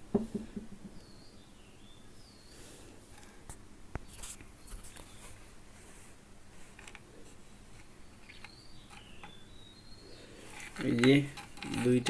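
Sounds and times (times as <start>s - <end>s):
light clicks of small parts: 10.6s - 12.0s.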